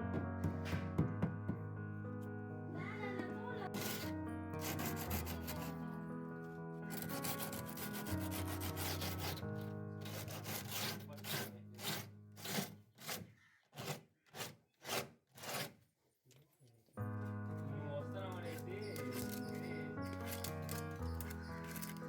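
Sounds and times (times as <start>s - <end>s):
background music: 0.0s - 12.7s, 17.0s - 22.0s
hand rubbing metal: 3.7s - 5.8s, 6.9s - 13.2s, 18.8s - 22.0s.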